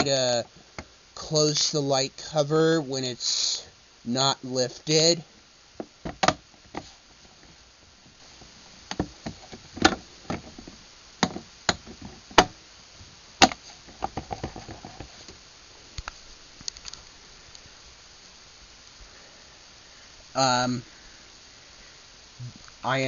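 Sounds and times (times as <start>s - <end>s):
plastic cover knocks and clicks: 5.8s - 6.9s, 8.9s - 12.6s, 13.4s - 15.1s
camera being set down: 13.4s - 15.1s.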